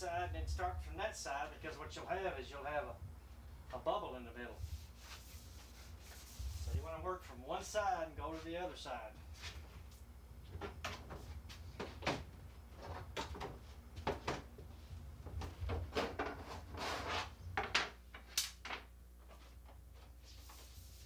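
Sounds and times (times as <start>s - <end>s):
wooden knocks and clatters: 10.5s - 14.6s.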